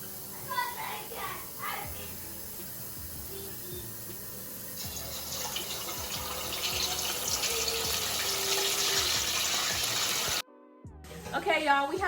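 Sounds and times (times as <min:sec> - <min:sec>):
water running from tap into sink: 0:04.6 - 0:10.4.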